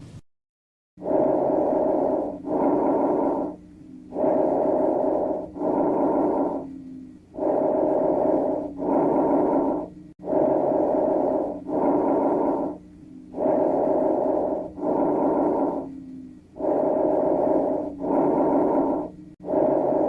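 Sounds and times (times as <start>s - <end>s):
musical wheezing breath sounds: 1.0s - 20.0s.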